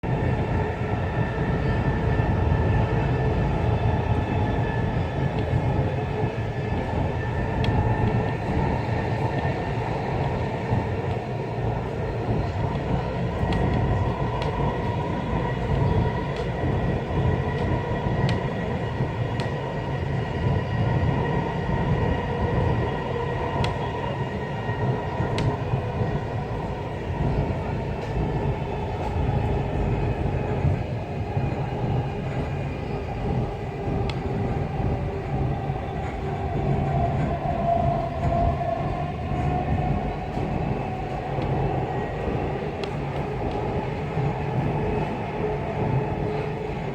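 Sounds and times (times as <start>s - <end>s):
train rumbling on track: 0.0s - 46.9s.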